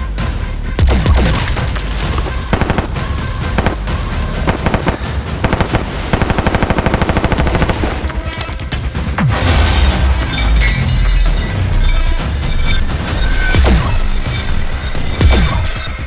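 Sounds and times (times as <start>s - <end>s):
automatic gunfire burst: 0.8s - 8.8s
gunshots: 0.8s - 10.4s, 13.5s - 16.0s.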